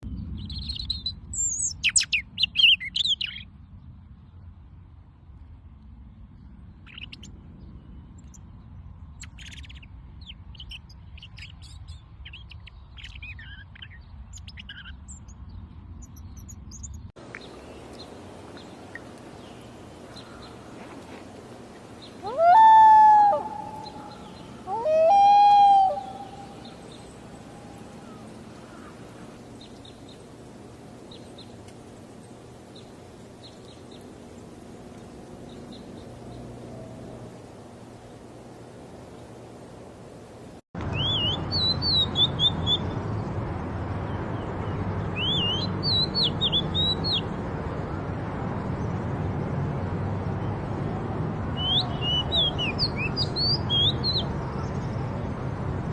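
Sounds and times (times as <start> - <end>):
small birds chirping: 0.0 - 4.5, 6.0 - 39.5, 40.8 - 47.9, 48.6 - 55.9
loud drawn-out bird calls: 21.9 - 30.3.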